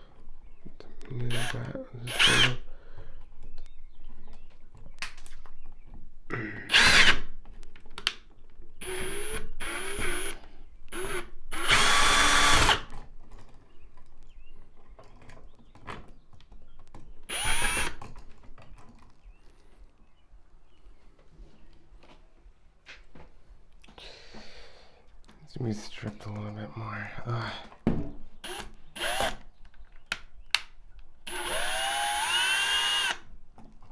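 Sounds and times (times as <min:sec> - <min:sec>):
power drill whirring: 0:01.3 - 0:02.7, 0:06.7 - 0:07.2, 0:08.8 - 0:12.9, 0:17.3 - 0:18.1, 0:28.4 - 0:29.5, 0:31.2 - 0:33.3.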